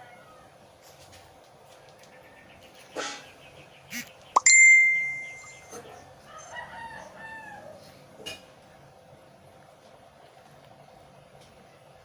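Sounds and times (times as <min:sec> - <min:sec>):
rooster crowing: 0:06.2 - 0:07.9.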